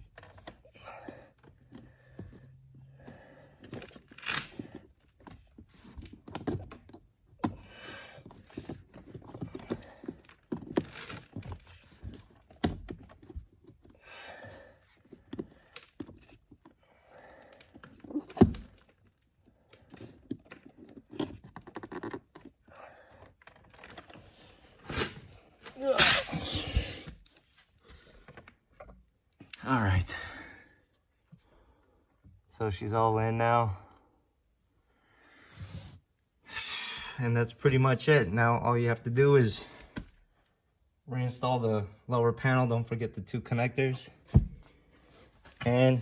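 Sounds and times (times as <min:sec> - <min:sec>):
plastic clicks and scrapes: 0:19.7 - 0:22.6.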